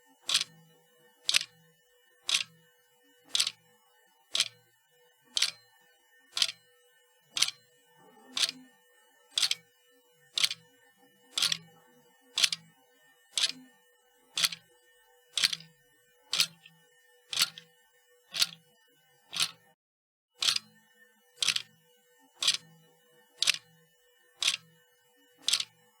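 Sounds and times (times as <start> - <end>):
sharp mechanical clicks: 0.3 - 0.5, 1.3 - 1.5, 2.3 - 2.5, 3.3 - 3.6, 5.4 - 5.6, 6.4 - 6.6, 8.4 - 8.6, 9.4 - 9.6, 10.4 - 10.6, 11.4 - 11.6, 12.4 - 12.6, 13.4 - 13.6, 14.4 - 14.6, 15.4 - 15.7, 16.3 - 16.7, 17.3 - 17.6, 18.3 - 18.6, 19.3 - 19.6, 20.4 - 20.6, 21.4 - 21.7, 22.4 - 22.6, 23.4 - 23.6, 24.4 - 24.6, 25.4 - 25.7.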